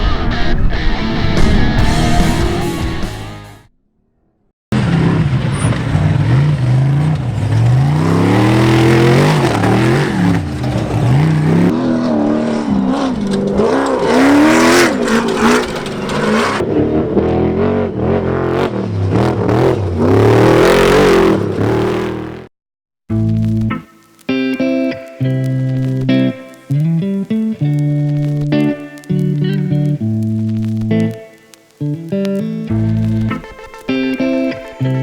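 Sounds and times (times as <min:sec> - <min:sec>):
race vehicle engines revving: 0:04.7 - 0:22.5.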